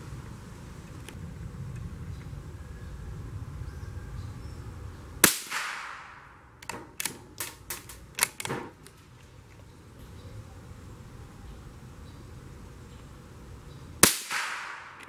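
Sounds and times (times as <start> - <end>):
rifle shot with echo: 5.2 - 8.7, 14.0 - 15.0
rifle bolt clicks: 6.6 - 9.0.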